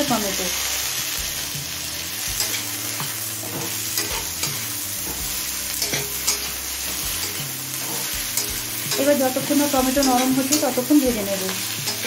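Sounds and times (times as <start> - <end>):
vegetables sizzling in hot oil: 0.0 - 12.0
utensil clicking against pan: 2.4 - 12.0.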